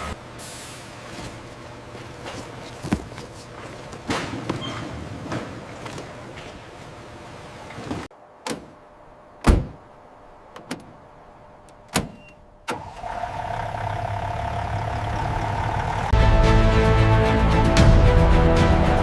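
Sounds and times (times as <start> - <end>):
music: 16.2 - 19.0.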